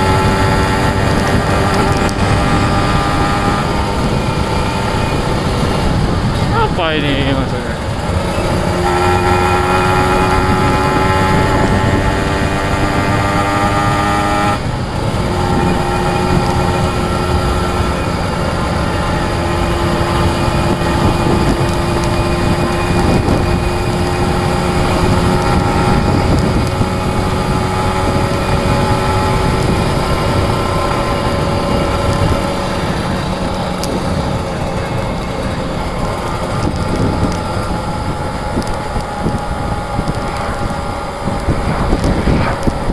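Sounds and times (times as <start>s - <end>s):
two-stroke motorcycle engine running: 0.0s - 42.9s.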